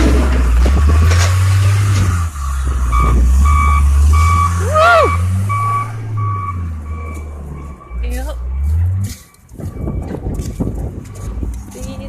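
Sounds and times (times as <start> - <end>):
low rumble: 0.0 - 11.8
reverse warning alarm beeping: 2.9 - 10.8.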